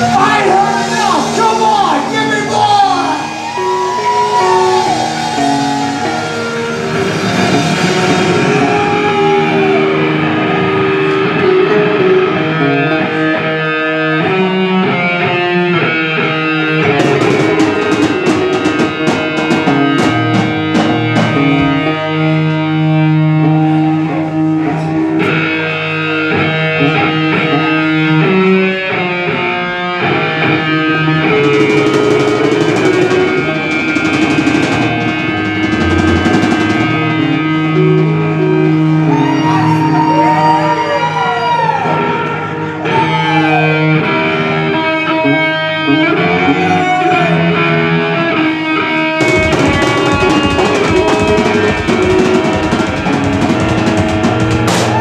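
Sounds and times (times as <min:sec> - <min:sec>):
drum kit: 0:00.0 - 0:13.3, 0:16.2 - 0:23.2, 0:31.1 - 0:39.4, 0:49.2 - 0:55.0
electric guitar: 0:00.0 - 0:55.0
sharp cymbal and drum hits: 0:31.5 - 0:38.0.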